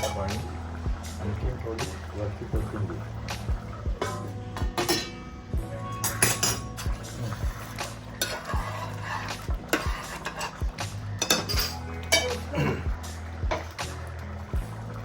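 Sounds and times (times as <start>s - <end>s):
spoon scraping cooking pan: 6.1s - 12.5s.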